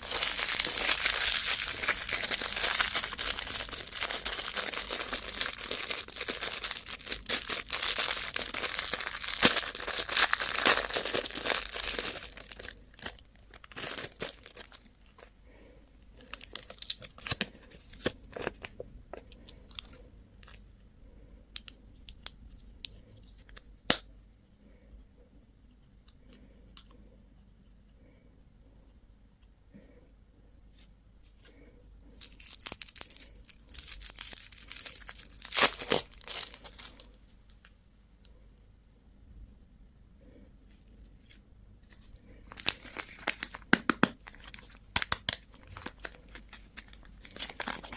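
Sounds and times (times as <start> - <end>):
plastic wrapper crinkling and tearing: 0.0 - 15.3, 16.2 - 20.6, 32.2 - 37.7, 41.8 - 47.9.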